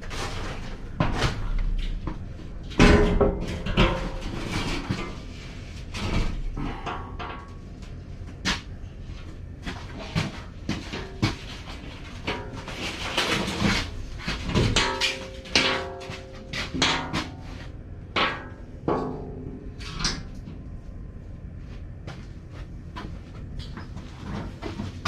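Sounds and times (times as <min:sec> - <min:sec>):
objects knocking and clunking: 0:00.0 - 0:08.7, 0:09.6 - 0:17.4.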